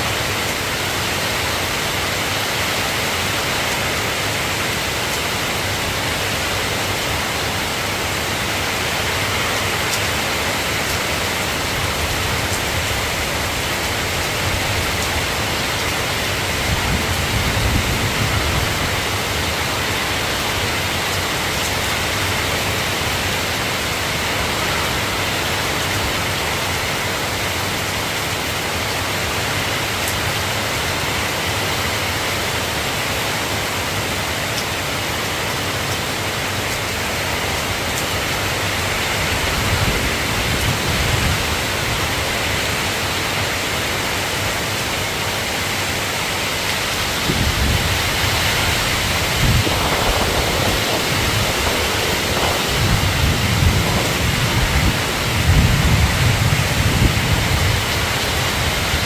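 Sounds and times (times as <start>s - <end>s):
steady rain falling: 0.0s - 59.0s
low rumbles: 47.2s - 58.3s.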